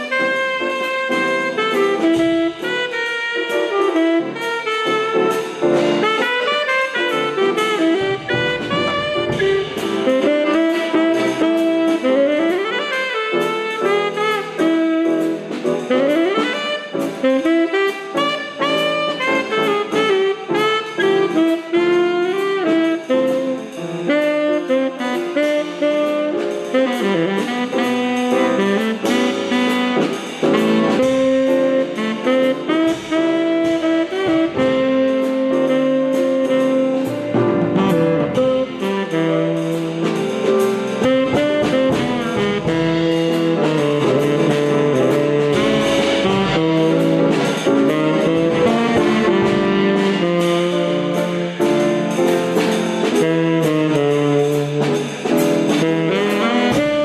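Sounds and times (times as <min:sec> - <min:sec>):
horn-led jazz melody: 0:00.0 - 0:57.0.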